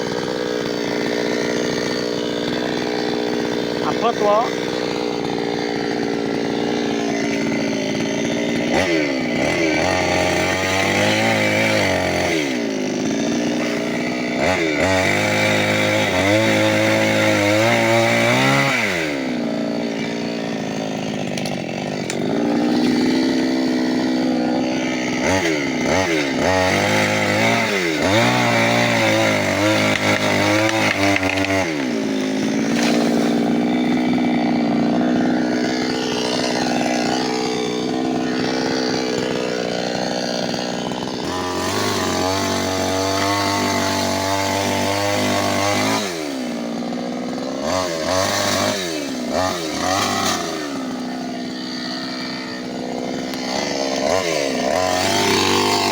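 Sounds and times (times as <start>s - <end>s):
chainsaw engine revving: 0.0s - 55.9s.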